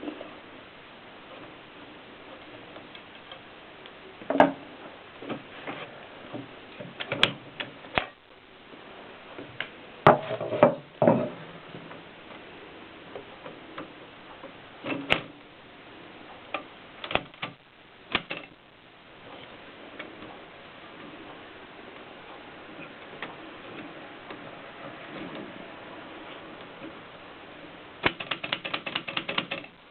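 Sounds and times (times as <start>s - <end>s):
typewriter clacks: 17.0s - 18.5s, 28.0s - 29.8s
typewriter knocks: 28.0s - 29.7s.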